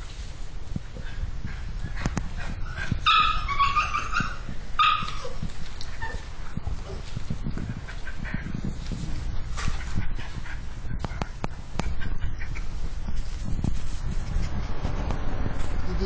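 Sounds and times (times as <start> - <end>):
small dogs barking and yipping: 1.9 - 8.5.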